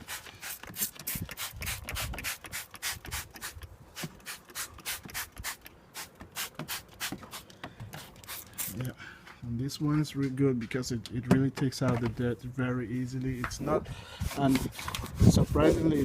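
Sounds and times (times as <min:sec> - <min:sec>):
spray bottle hissing sprays: 0:00.0 - 0:08.9.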